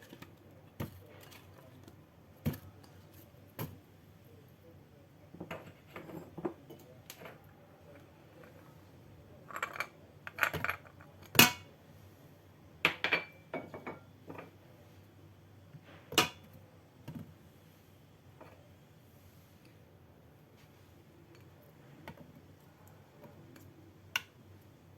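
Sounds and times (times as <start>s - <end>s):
dishes and utensils clinking: 12.9s - 14.5s.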